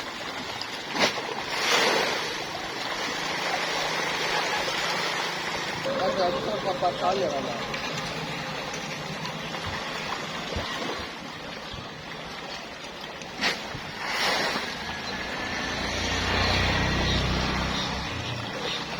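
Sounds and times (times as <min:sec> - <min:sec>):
rushing splashing water: 0:00.0 - 0:18.9
low motor hum: 0:05.6 - 0:13.0, 0:14.7 - 0:18.9.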